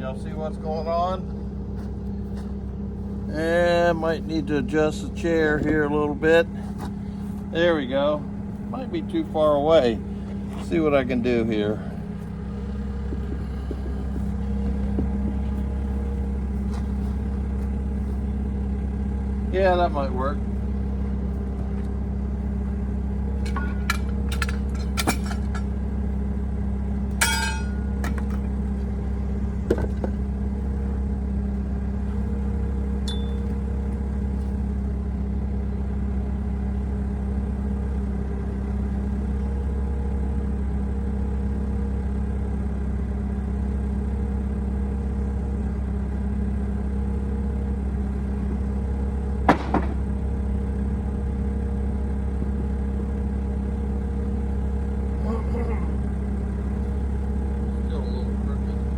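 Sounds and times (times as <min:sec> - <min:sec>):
engine idling: 0:00.0 - 0:58.9
metallic clinks and knocks: 0:27.2 - 0:28.4.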